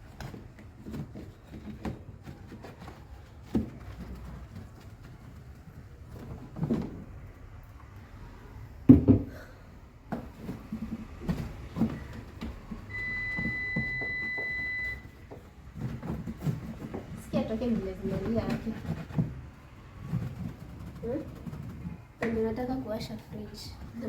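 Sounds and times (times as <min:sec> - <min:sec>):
knocks and thumps of handling: 0:00.0 - 0:07.6, 0:08.9 - 0:24.0
refrigerator high beep: 0:12.9 - 0:15.2.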